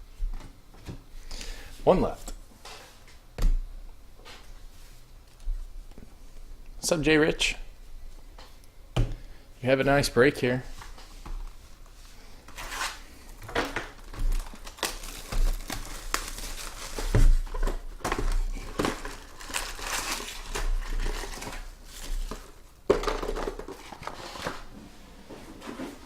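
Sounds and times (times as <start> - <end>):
wrappers crinkling and rustling: 11.4 - 22.6.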